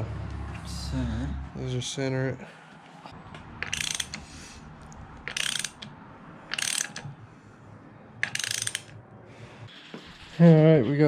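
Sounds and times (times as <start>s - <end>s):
ratchet wrench clicking: 3.6s - 4.2s, 5.2s - 5.9s, 6.5s - 7.1s, 8.2s - 9.0s.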